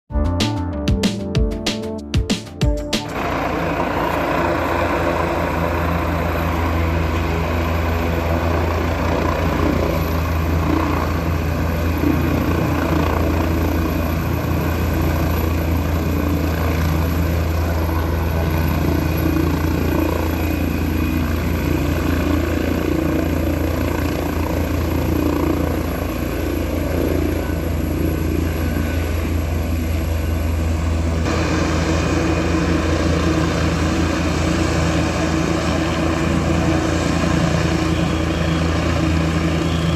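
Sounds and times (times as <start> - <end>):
helicopter running: 0.2 - 39.9
faint high whine: 9.4 - 39.9.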